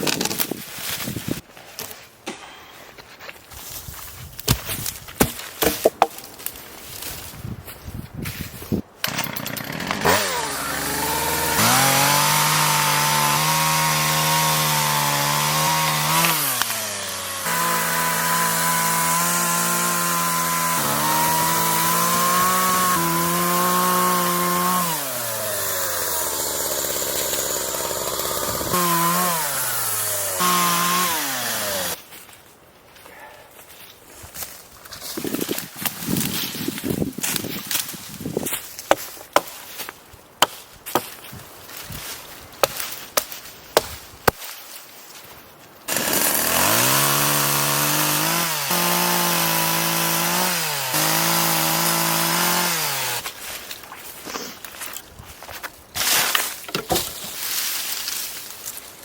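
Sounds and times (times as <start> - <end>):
knocks and handling noise: 4.0 - 7.3, 56.3 - 57.6
chainsaw running: 9.0 - 32.0, 45.9 - 53.3.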